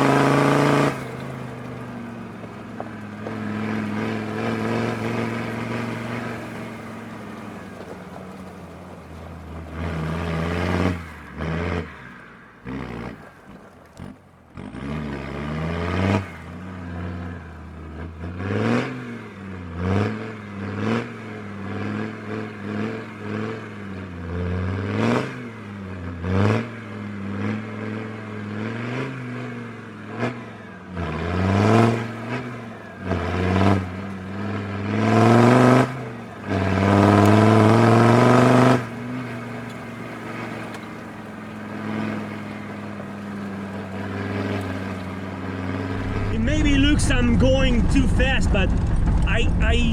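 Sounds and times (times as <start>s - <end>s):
diesel engine revving: 0.0s - 49.9s.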